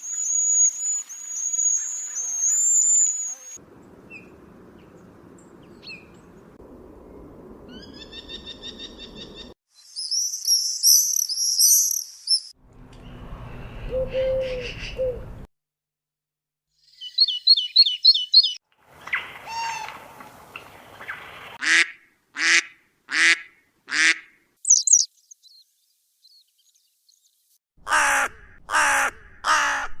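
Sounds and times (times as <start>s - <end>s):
high bird chirps: 0.0s - 4.3s, 7.7s - 12.6s, 16.8s - 18.6s, 24.6s - 25.6s.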